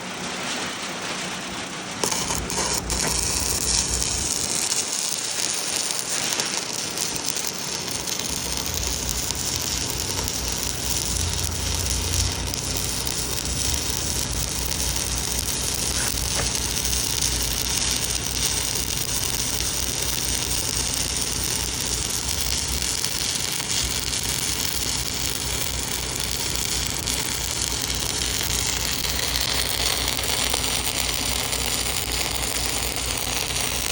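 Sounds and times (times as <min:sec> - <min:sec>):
welding arc crackling and hissing: 0:00.0 - 0:33.9.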